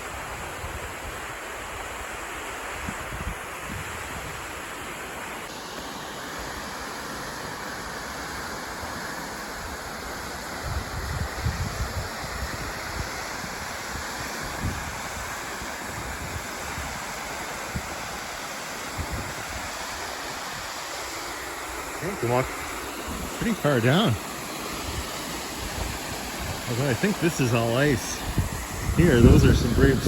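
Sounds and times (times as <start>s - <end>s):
waterfall rushing: 4.3s - 30.0s
wind buffeting microphone: 10.7s - 13.1s, 28.2s - 30.0s.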